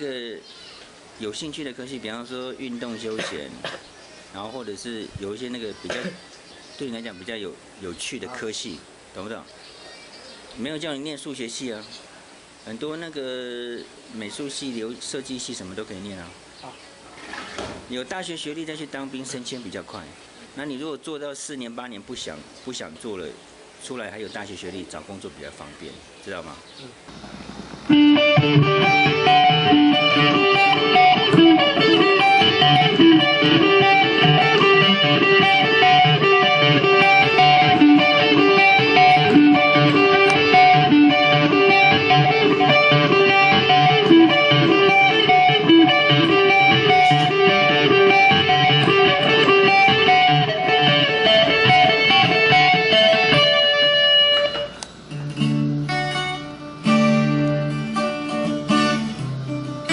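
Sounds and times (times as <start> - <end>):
guitar music: 27.9 - 59.9.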